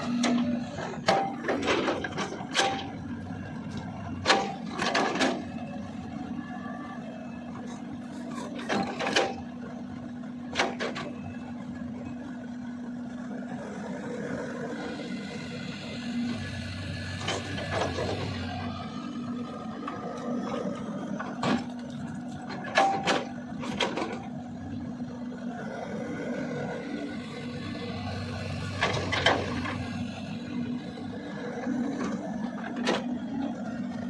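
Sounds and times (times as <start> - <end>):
excavator bucket knocks and clanks: 0.0 - 3.1, 3.7 - 5.6, 8.2 - 9.6, 10.5 - 11.2, 21.2 - 24.4
excavator diesel engine running: 0.0 - 34.0.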